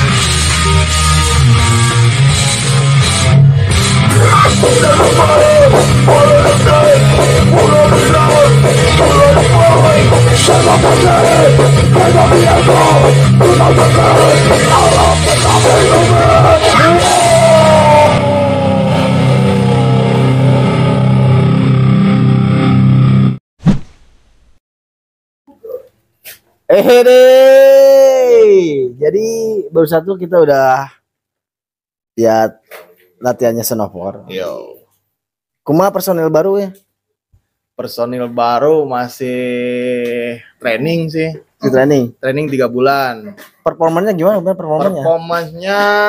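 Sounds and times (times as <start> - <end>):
distorted electric guitars: 0.0 - 23.4
bass and drums: 0.0 - 24.6
person shouting vocals: 4.1 - 19.3, 26.7 - 29.0, 44.8 - 46.0.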